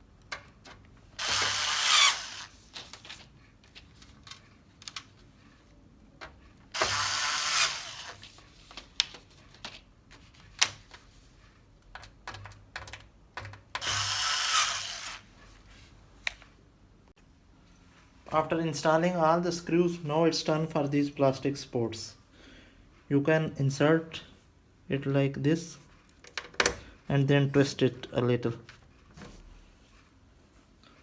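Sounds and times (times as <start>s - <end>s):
electric screwdriver whirring: 1.2s - 2.6s, 6.8s - 8.2s, 13.8s - 15.2s.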